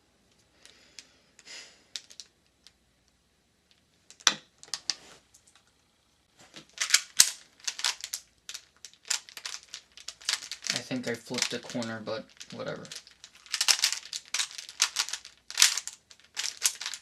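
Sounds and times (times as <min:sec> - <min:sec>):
plastic puzzle cube clicking: 0:06.8 - 0:17.0.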